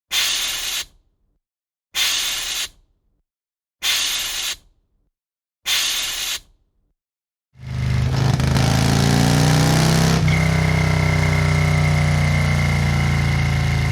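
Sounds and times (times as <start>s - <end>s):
short hiss: 0.1s - 1.0s, 2.0s - 2.8s, 3.8s - 4.6s, 5.7s - 6.5s.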